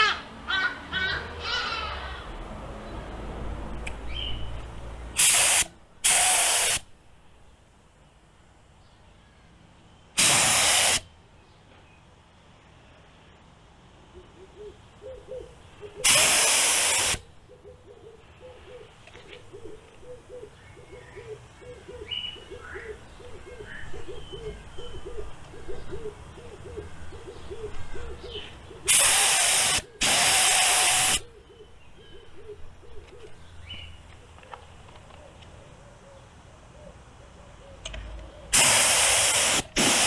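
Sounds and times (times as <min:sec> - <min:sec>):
spray gun air bursts: 0:05.2 - 0:06.9, 0:10.2 - 0:11.1, 0:16.0 - 0:17.2, 0:28.9 - 0:31.2, 0:38.5 - 0:40.0.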